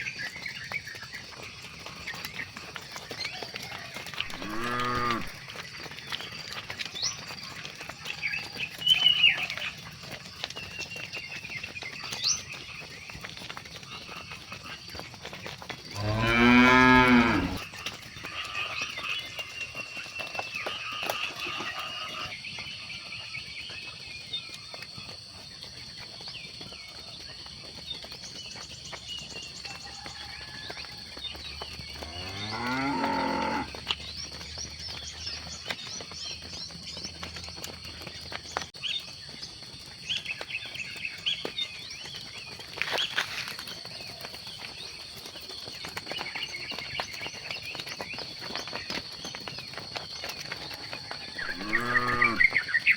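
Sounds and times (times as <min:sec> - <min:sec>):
cow mooing: 0:04.3 - 0:05.3, 0:15.9 - 0:17.6, 0:32.0 - 0:33.7, 0:51.4 - 0:52.6.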